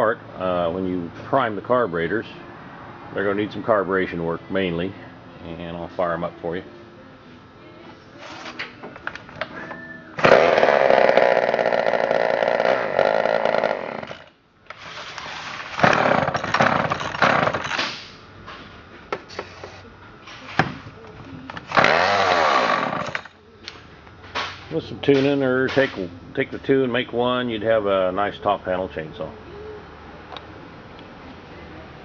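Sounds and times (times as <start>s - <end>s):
chainsaw engines revving: 10.2s - 14.3s, 15.7s - 17.8s, 21.6s - 23.4s.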